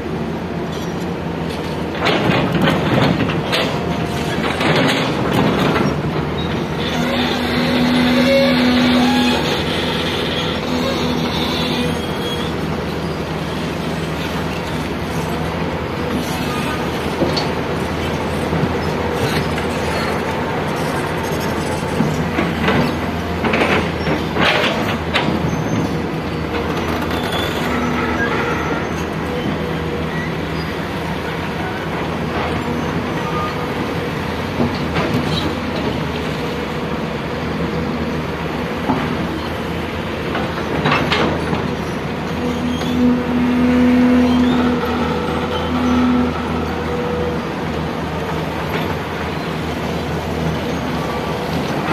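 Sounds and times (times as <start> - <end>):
diesel engine running: 0.0 - 51.9
short metallic squeals: 5.8 - 23.2, 25.4 - 31.0, 32.6 - 34.0, 41.8 - 48.0.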